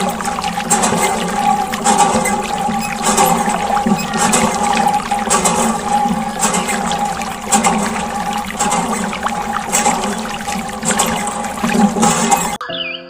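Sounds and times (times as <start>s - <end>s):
steady hum: 0.0s - 12.6s
water gushing and splashing: 0.0s - 12.6s.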